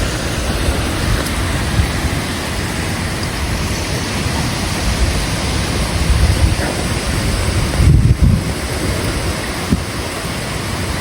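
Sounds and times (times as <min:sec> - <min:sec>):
heavy rain: 0:00.0 - 0:11.0
wind buffeting microphone: 0:00.0 - 0:11.0.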